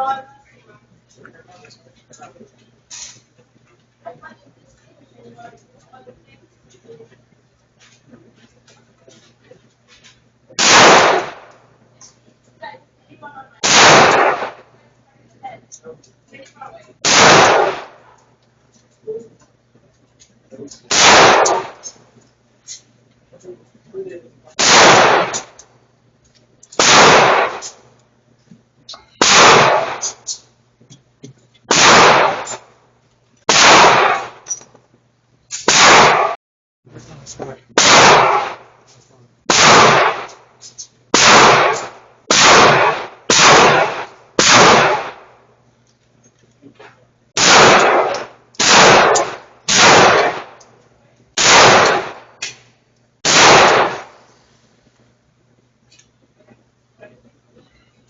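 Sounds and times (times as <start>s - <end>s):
gunshots: 10.6s - 11.6s, 13.6s - 14.7s, 17.0s - 18.2s, 20.9s - 22.0s, 24.6s - 25.6s, 26.8s - 27.8s, 29.2s - 30.3s, 31.7s - 32.7s, 33.5s - 34.5s, 35.6s - 36.4s, 37.8s - 38.8s, 39.5s - 40.5s, 41.1s - 45.4s, 47.4s - 50.6s, 51.4s - 52.6s, 53.2s - 54.2s.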